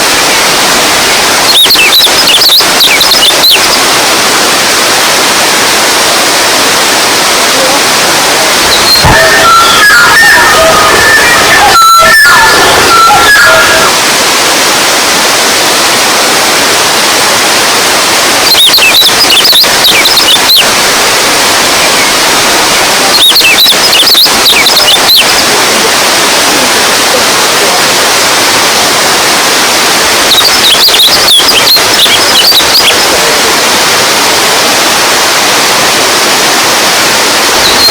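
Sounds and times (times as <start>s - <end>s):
running water rushing: 0.0s - 37.9s
high-pitched chirping: 8.7s - 13.9s.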